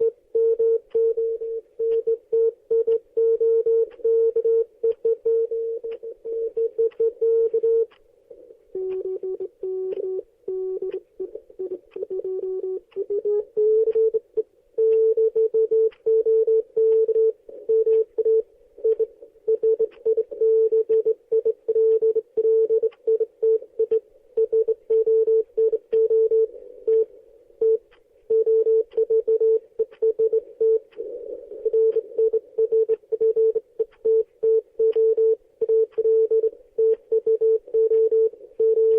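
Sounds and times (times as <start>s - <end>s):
morse code beeps: 8.8s - 11.0s, 14.8s - 30.9s, 31.6s - 38.9s.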